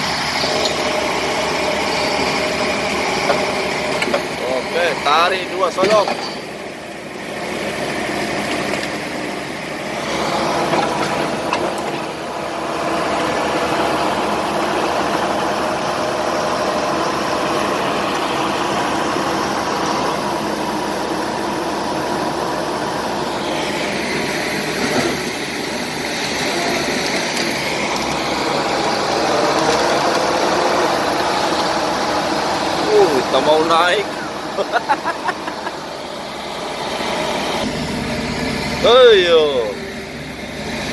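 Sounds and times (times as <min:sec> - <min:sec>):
bulldozer diesel engines running: 0:00.0 - 0:40.9.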